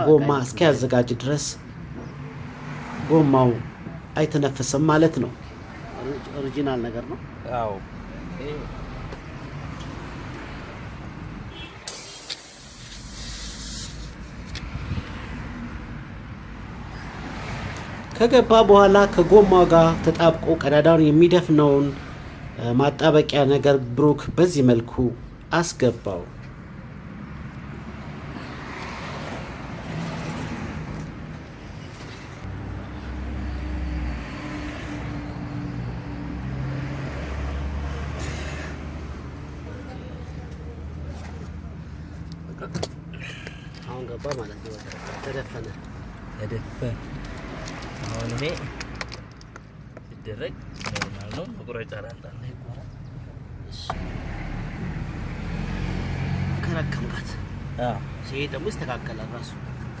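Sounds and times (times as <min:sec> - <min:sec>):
low traffic rumble: 0:00.0 - 1:00.0
sharp pressurised hiss: 0:11.6 - 0:14.4.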